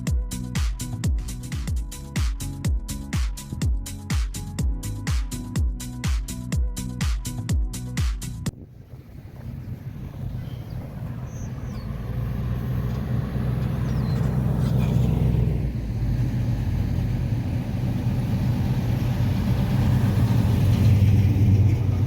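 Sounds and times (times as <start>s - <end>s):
car engine humming: 8.5s - 22.0s.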